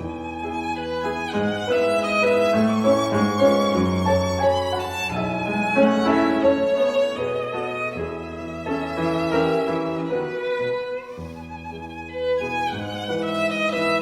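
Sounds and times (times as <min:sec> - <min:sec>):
bowed violin melody: 0:00.0 - 0:14.0.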